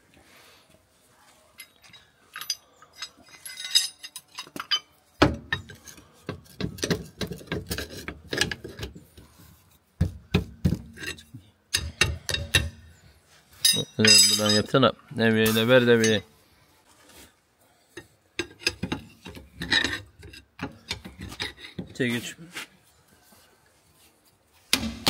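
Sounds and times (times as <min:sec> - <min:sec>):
metal tools clinking on metal: 0:01.6 - 0:06.2, 0:11.0 - 0:13.0, 0:13.6 - 0:14.8, 0:15.4 - 0:16.3, 0:18.4 - 0:22.1.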